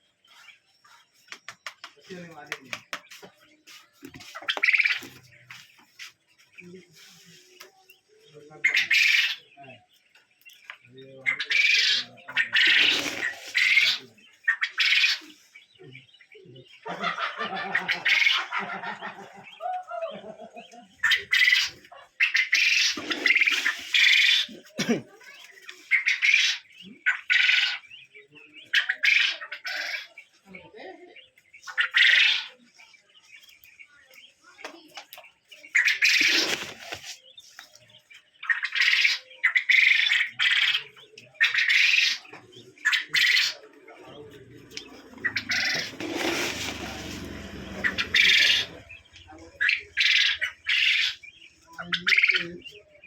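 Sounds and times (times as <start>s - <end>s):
quail chirping: 0.0s - 53.0s
quail calling in rasping bursts: 45.2s - 46.7s, 47.8s - 49.0s, 49.6s - 51.2s.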